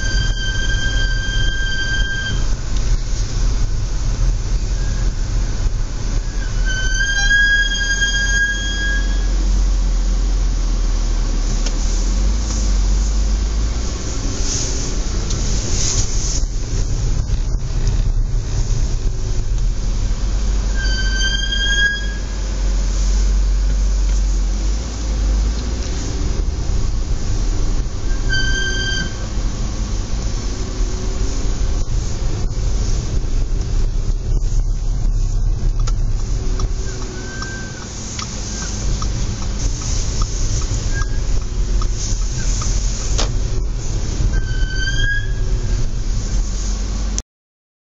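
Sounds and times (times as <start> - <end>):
car brakes squealing: 0.0 - 2.6, 4.6 - 9.4, 20.7 - 22.5, 28.0 - 29.4, 36.0 - 43.3, 44.2 - 46.0
rumble of car and road: 0.0 - 47.2.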